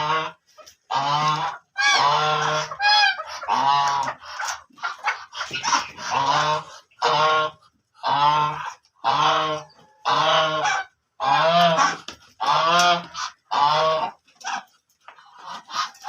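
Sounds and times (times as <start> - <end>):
ducks quacking: 0.0 - 16.0.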